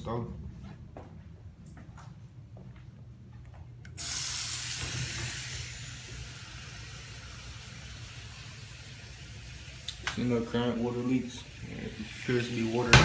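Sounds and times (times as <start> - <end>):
water running into a sink: 4.0 - 13.0.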